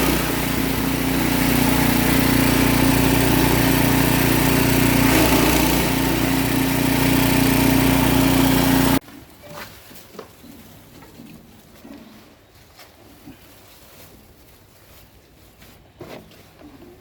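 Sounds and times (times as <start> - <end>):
grinding machine humming: 0.0 - 9.0.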